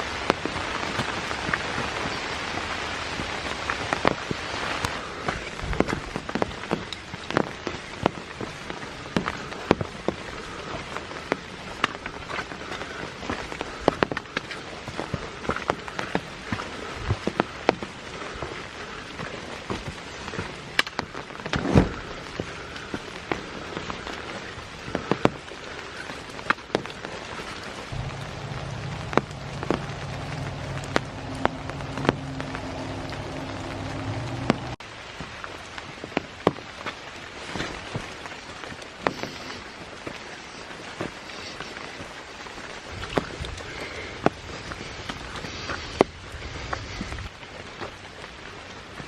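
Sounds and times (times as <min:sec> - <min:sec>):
large raindrops tapping: 0:00.0 - 0:49.0
steady rain falling: 0:00.0 - 0:49.0
low steady hum: 0:27.9 - 0:34.8.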